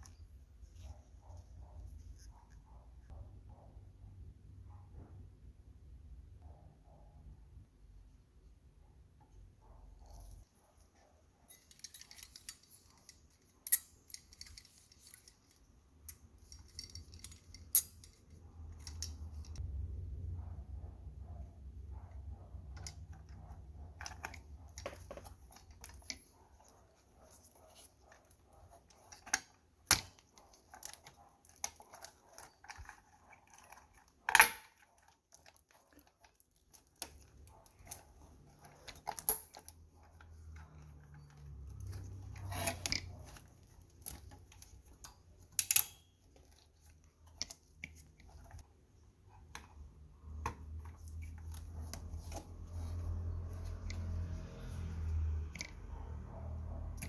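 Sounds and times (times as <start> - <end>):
hands handling computer parts: 22.7 - 54.0.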